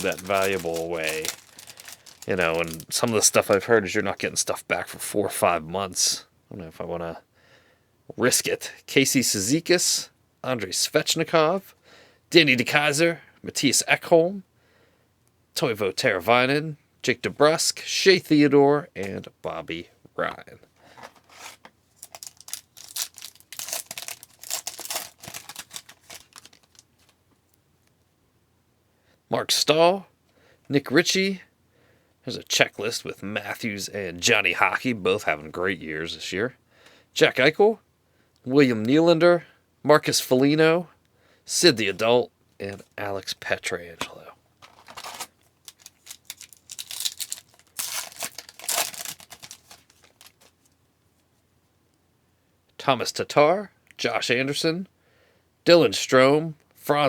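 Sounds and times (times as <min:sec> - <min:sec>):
wrapper tearing and crinkling: 0:00.0 - 0:03.8, 0:21.2 - 0:27.2, 0:44.6 - 0:50.5.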